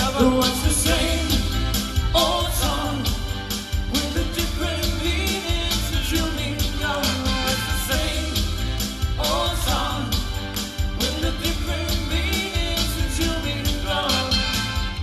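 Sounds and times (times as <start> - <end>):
singing over backing music: 0.0 - 15.0.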